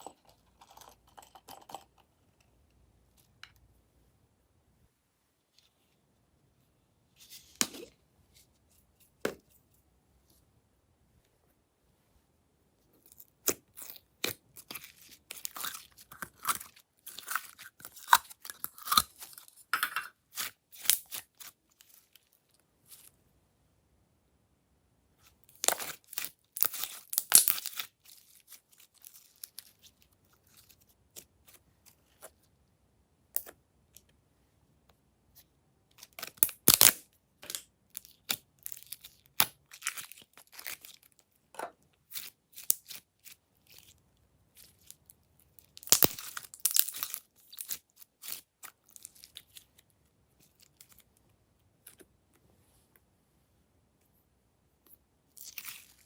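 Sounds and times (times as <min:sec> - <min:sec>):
slime crackling and tearing: 0:25.6 - 0:29.6, 0:45.7 - 0:49.7.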